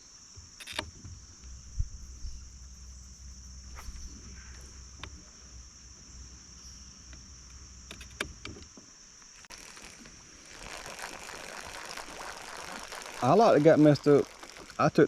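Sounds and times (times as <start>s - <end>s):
hiss: 3.6s - 5.6s, 9.4s - 15.0s
knocks and clicks of boat gear: 7.1s - 8.9s
high-pitched insect drone: 9.3s - 15.0s.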